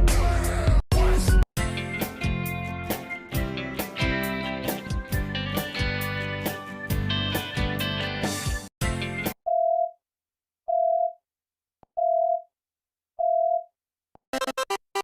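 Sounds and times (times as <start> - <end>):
strummed guitar ringtone: 1.6 - 9.2
electronic beep ringtone: 10.7 - 11.2, 13.2 - 13.7.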